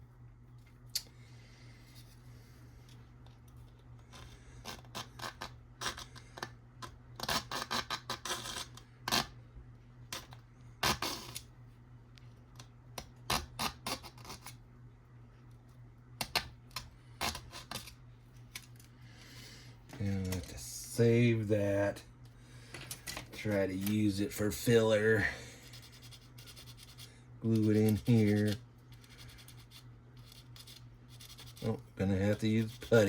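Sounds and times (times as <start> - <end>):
hobby knife scraping plastic: 6.8 - 9.3.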